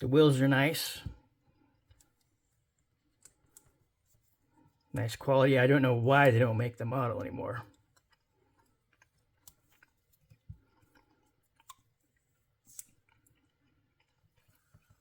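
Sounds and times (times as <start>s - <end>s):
faint clicks and taps: 1.8s - 5.2s, 7.6s - 15.0s.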